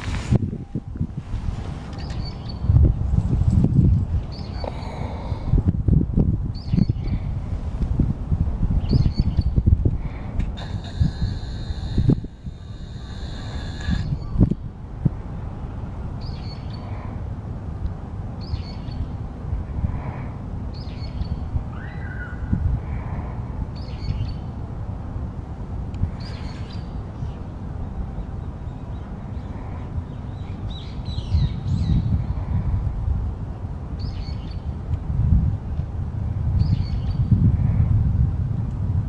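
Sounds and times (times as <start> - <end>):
steady low rumble: 0.0 - 21.7
small bird high calls: 10.6 - 14.4, 20.8 - 22.5.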